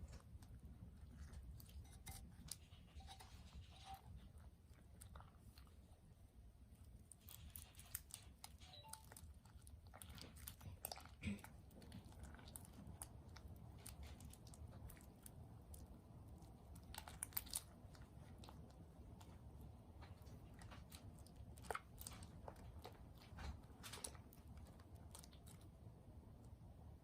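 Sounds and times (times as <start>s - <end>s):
slime squishing clicks and crackles: 6.8s - 26.7s.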